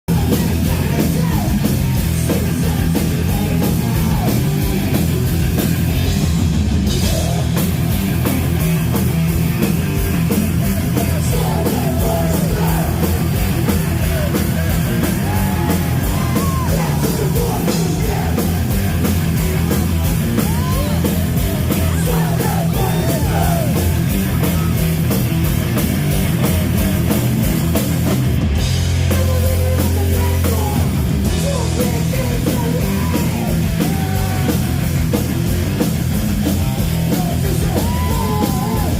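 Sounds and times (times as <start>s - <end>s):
distorted guitars: 0.1s - 38.9s
pounding drums: 0.1s - 38.9s
thrash metal band playing live: 0.1s - 38.9s
shouted vocals: 10.8s - 25.0s, 29.4s - 35.0s, 37.0s - 38.9s.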